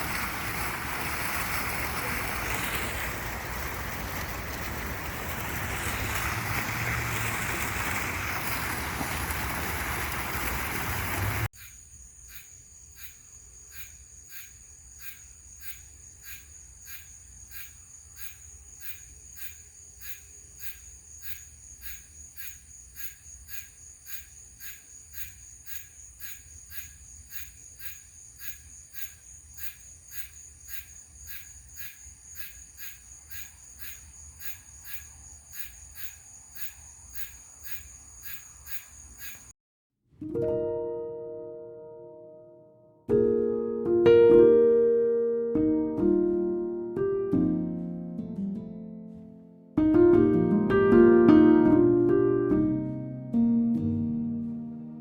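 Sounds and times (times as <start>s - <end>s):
insects chirping: 0.0s - 39.5s.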